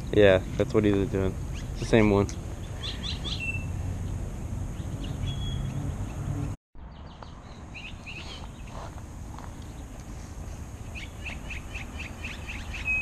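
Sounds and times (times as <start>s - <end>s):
small birds chirping: 0.9s - 13.0s.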